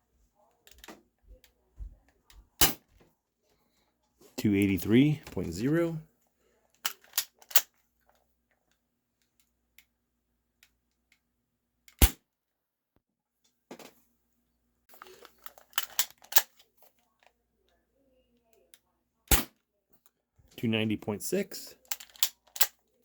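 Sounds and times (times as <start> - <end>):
plastic clicks of pistol cocking: 6.8 - 7.8, 15.2 - 16.6, 21.9 - 22.8.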